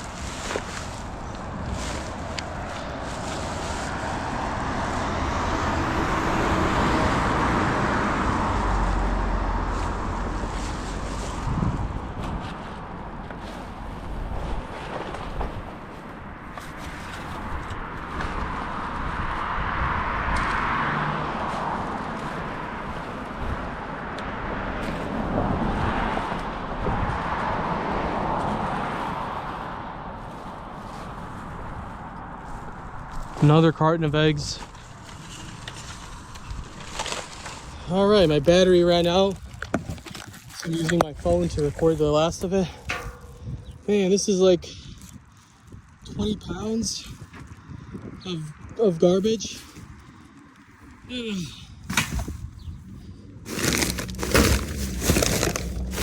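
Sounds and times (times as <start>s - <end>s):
cars passing: 0.0s - 56.0s
car driving past: 19.4s - 21.9s.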